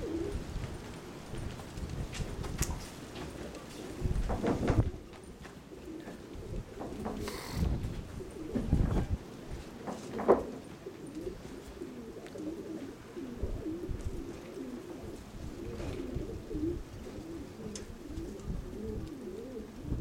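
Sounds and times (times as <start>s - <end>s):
pigeons cooing: 0.0s - 0.7s, 3.4s - 20.0s
wind buffeting microphone: 0.0s - 3.0s, 3.9s - 5.2s, 6.4s - 9.3s, 13.2s - 14.3s, 15.2s - 20.0s.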